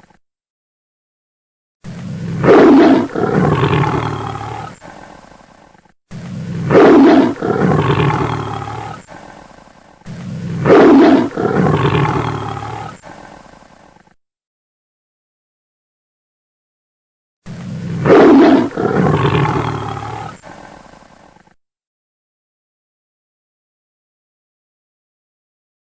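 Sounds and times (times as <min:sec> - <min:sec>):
tiger roaring: 0:01.9 - 0:14.1, 0:17.5 - 0:21.6.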